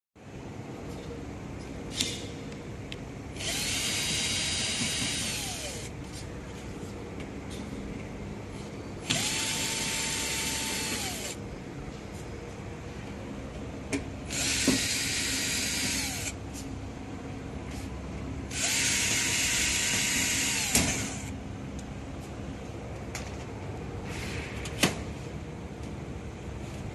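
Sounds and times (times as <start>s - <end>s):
power drill whining: 3.4s - 5.9s, 9.0s - 11.4s, 14.3s - 16.4s, 18.5s - 21.3s.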